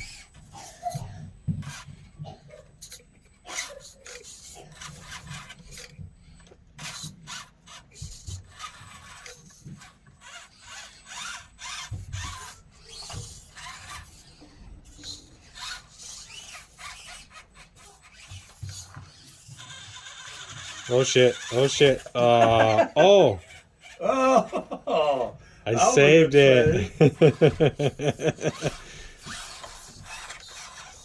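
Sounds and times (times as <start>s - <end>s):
small drivetrains grinding and clicking: 0.0s - 31.0s
tyres and chassis scraping: 8.5s - 31.0s.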